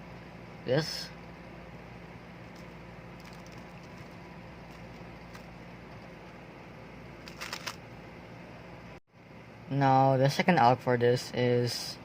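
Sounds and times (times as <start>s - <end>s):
puzzle cube clicks: 7.2s - 7.8s.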